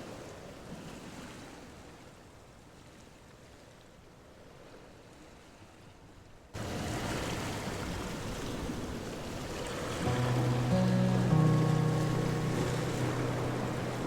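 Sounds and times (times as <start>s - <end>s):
steady music tones: 10.1s - 14.0s.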